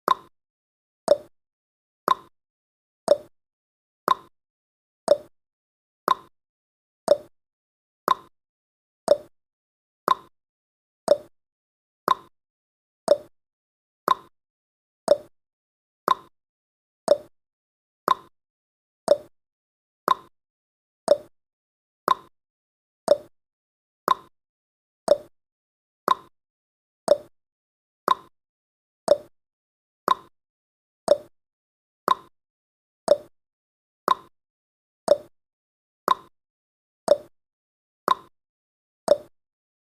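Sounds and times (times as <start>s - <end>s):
clock tick-tock: 0.1s - 0.3s, 1.1s - 1.3s, 2.1s - 2.3s, 3.1s - 3.3s, 4.1s - 4.3s, 5.1s - 5.3s, 6.1s - 6.3s, 7.1s - 7.3s, 8.1s - 8.3s, 9.1s - 9.3s, 10.1s - 10.3s, 11.1s - 11.3s, 12.1s - 12.3s, 13.1s - 13.3s, 14.1s - 14.3s, 15.1s - 15.3s, 16.1s - 16.3s, 17.1s - 17.3s, 18.1s - 18.3s, 19.1s - 19.3s, 20.1s - 20.3s, 21.1s - 21.3s, 22.1s - 22.3s, 23.1s - 23.3s, 24.1s - 24.3s, 25.1s - 25.3s, 26.1s - 26.3s, 27.1s - 27.3s, 28.1s - 28.3s, 29.1s - 29.3s, 30.1s - 30.3s, 31.1s - 31.3s, 32.1s - 32.3s, 33.1s - 33.3s, 34.1s - 34.3s, 35.1s - 35.3s, 36.1s - 36.3s, 37.1s - 37.3s, 38.1s - 38.3s, 39.1s - 39.3s.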